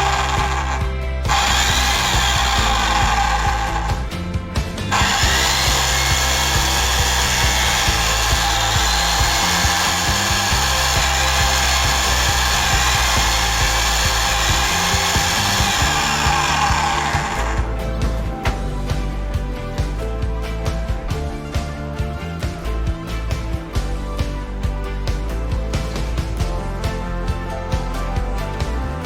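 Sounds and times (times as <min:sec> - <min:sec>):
electric demolition hammer running: 0:00.0 - 0:23.9
background music: 0:00.0 - 0:29.0.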